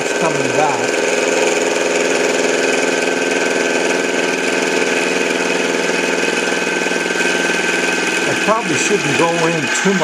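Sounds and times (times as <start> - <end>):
lathe whining: 0.0 - 10.0.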